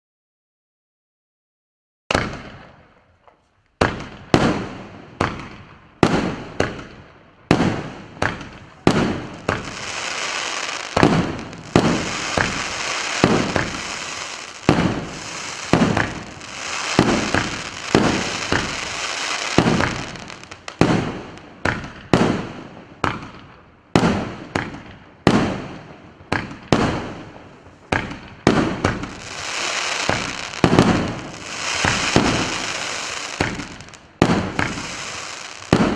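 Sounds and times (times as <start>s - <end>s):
firework launch and burst reports: 7.6s - 22.4s, 28.0s - 35.9s
crackling hiss of burning stars: 8.5s - 21.4s, 28.8s - 35.9s.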